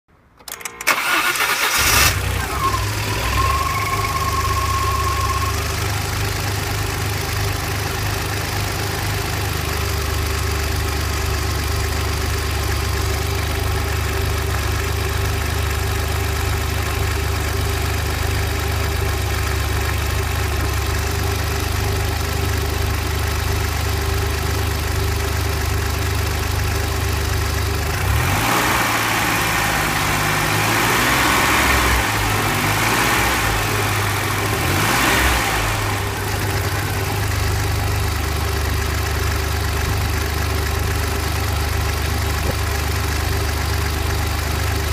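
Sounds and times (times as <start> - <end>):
car engine starting and idling: 0.2 - 44.9
thin high tone: 2.6 - 5.9.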